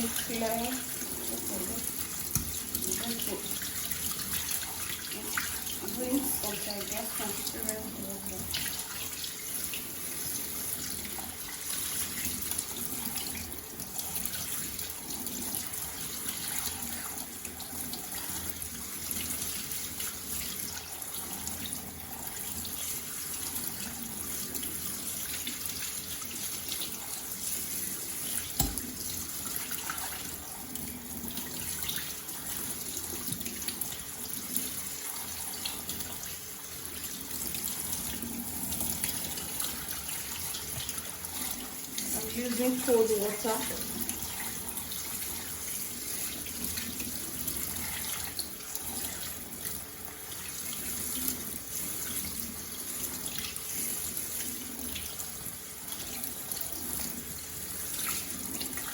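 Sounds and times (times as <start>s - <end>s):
tap running into sink: 1.9s - 3.6s, 28.4s - 29.1s, 40.6s - 41.1s.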